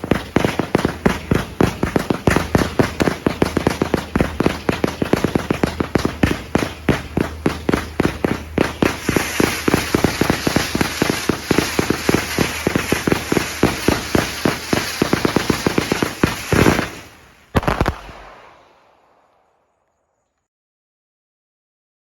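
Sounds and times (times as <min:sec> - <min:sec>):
fireworks rapid shots: 0:00.0 - 0:20.0
big firework burst: 0:00.0 - 0:20.2
crackle of bursting shells: 0:00.0 - 0:20.5
sharp double report: 0:17.6 - 0:20.2.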